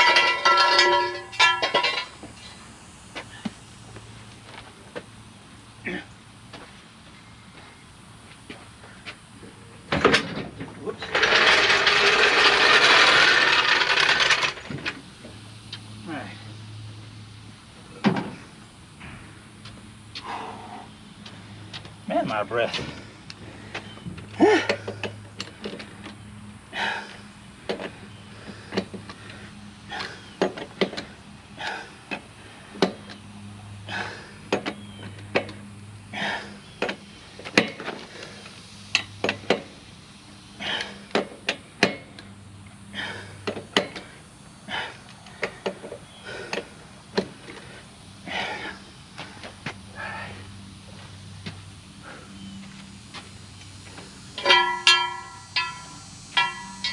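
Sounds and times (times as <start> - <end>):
man breathing hard: 20.1 - 21.8, 22.7 - 30.4, 31.0 - 32.8, 33.7 - 34.6, 36.0 - 36.8, 40.5 - 41.2, 42.8 - 51.1, 51.9 - 52.6
low hum: 53.3 - 56.9.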